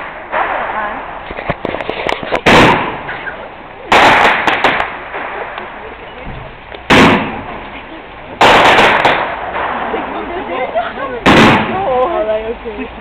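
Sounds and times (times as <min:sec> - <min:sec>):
crackling pops: 0:00.0 - 0:10.0
fireworks bursting: 0:00.0 - 0:12.2.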